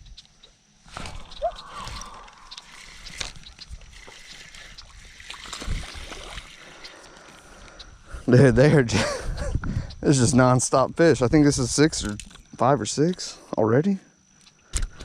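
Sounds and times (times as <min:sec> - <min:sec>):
water sloshing and splashing: 0:00.8 - 0:07.0.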